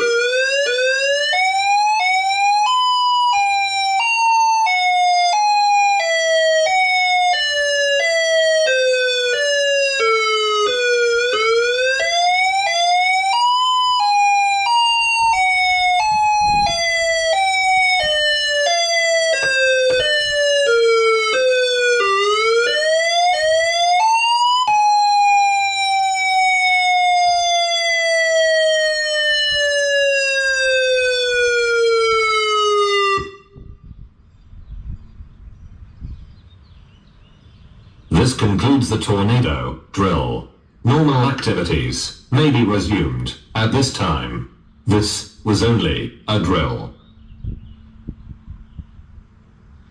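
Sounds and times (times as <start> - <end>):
electronic warning siren wailing: 0.0 - 34.0.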